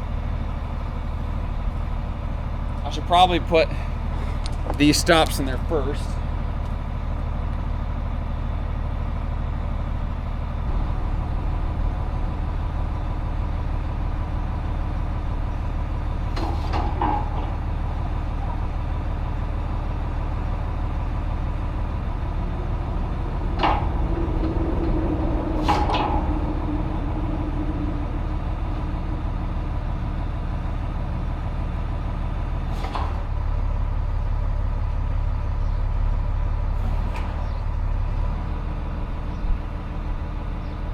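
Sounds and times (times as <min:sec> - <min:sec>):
engine idling: 0:00.0 - 0:40.9
low hum: 0:09.7 - 0:33.0.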